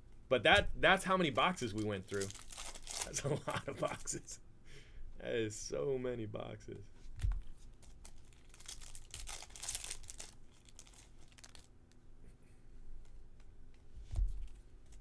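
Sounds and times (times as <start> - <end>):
card wrappers crinkling and tearing: 1.3 - 4.2, 7.4 - 11.8.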